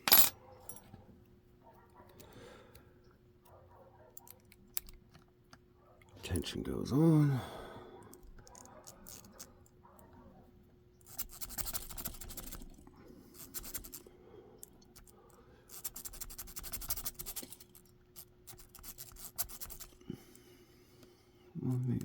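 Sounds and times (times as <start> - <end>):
zip tie scratching in lock: 8.4 - 9.5, 11.0 - 12.8, 13.4 - 14.0, 15.7 - 20.0.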